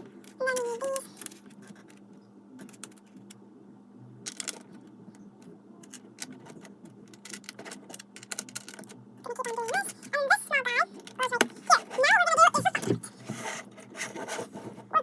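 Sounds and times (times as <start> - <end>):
plastic pieces clicking together: 4.2 - 10.1.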